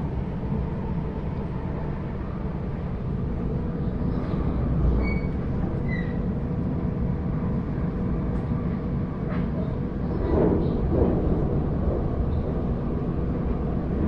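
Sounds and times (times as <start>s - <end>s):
train wheels rumbling on track: 0.0s - 14.0s
brief high squeaks: 5.0s - 6.2s.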